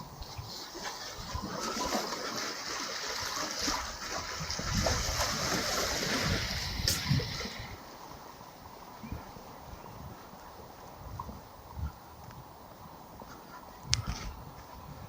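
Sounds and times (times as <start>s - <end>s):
water splashing against shore: 0.6s - 9.4s.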